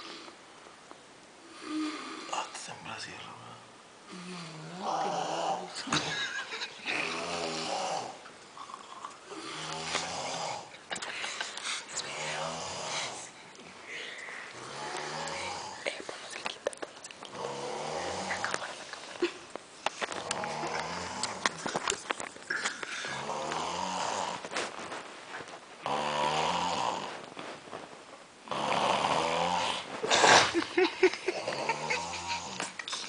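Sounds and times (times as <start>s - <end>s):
person snoring: 1.5s - 2.5s, 4.1s - 5.8s, 6.9s - 10.7s, 12.0s - 13.3s, 14.4s - 15.8s, 17.3s - 18.7s, 20.2s - 21.6s, 22.5s - 24.5s, 25.8s - 27.2s, 28.5s - 30.5s, 31.3s - 33.0s.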